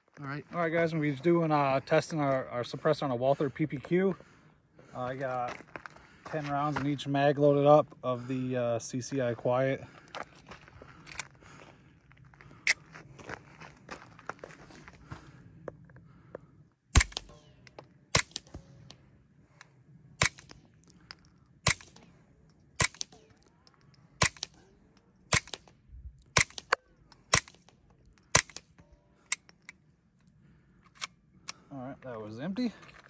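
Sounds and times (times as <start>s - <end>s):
suppressed pistol shots: 16.9s - 18.7s, 20.2s - 20.6s, 21.6s - 22.0s, 22.8s - 23.3s, 24.2s - 24.6s, 25.3s - 25.7s, 26.4s - 27.7s, 28.3s - 28.7s.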